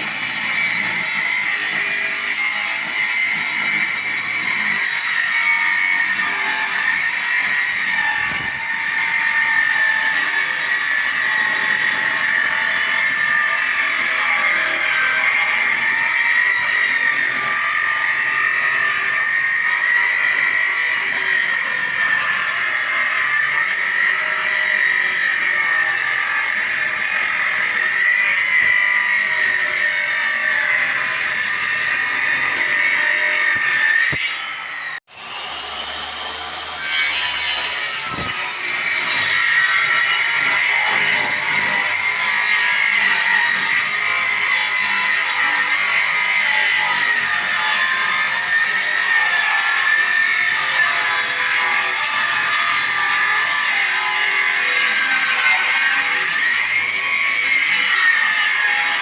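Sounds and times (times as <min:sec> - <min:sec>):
power tool whining on wood: 0:00.0 - 0:59.0.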